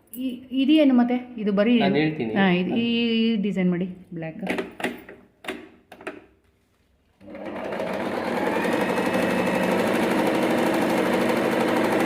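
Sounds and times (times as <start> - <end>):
electric sewing machine stitching: 7.2 - 12.0.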